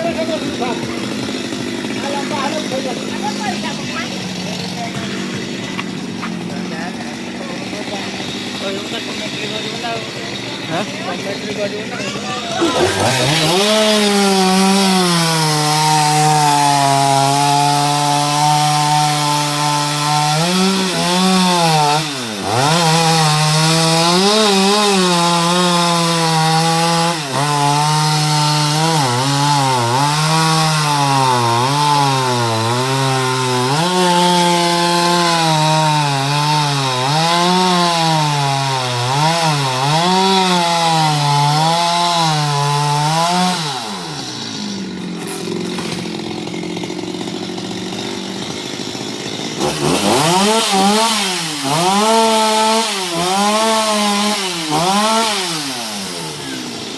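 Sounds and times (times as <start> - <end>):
chainsaw cutting wood: 0.0 - 56.9.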